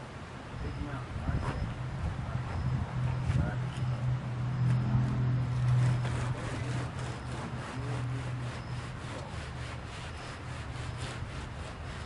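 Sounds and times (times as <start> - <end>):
trowel scraping concrete: 5.5 - 12.0.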